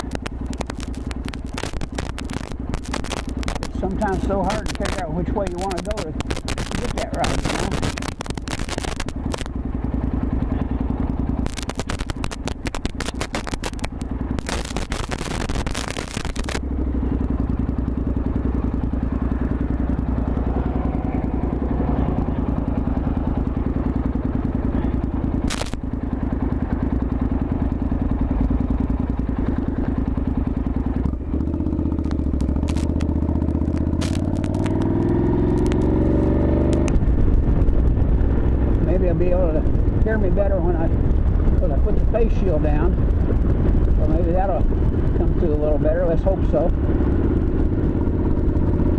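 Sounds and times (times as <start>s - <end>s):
microphone crackling and scraping: 0.0s - 9.6s, 11.4s - 16.6s, 25.4s - 25.8s, 32.0s - 38.0s
motorcycle engine running: 0.0s - 48.9s.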